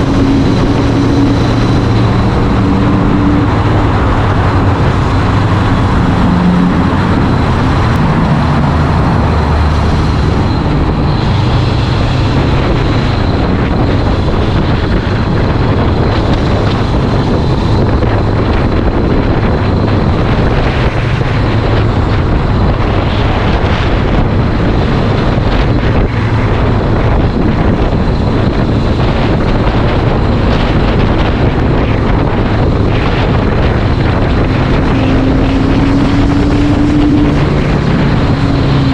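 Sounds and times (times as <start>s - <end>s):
motorcycle engine running: 0.0s - 38.9s
wind noise on microphone: 0.0s - 38.9s.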